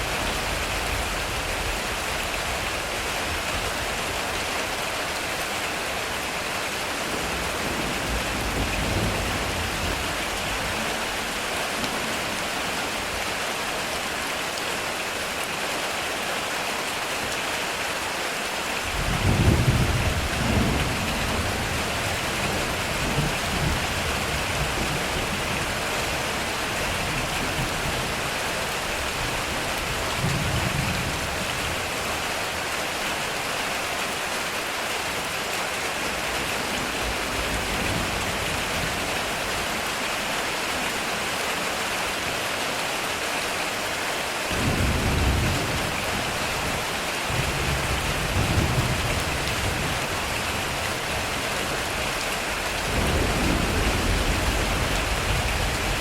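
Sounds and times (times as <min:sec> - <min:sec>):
heavy rain on metal roof: 0:00.0 - 0:56.0
thunder rumbling: 0:44.6 - 0:56.0
loud thunderclap: 0:52.9 - 0:56.0.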